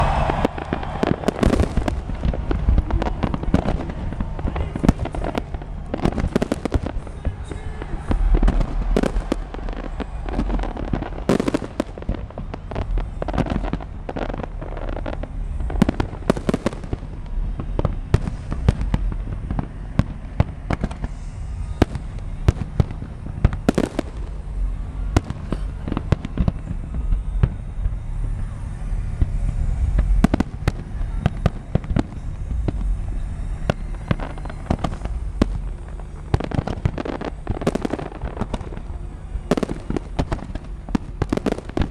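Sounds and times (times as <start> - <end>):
continuous low rumble: 0.0 - 41.9
fireworks bangs and pops: 0.0 - 41.9.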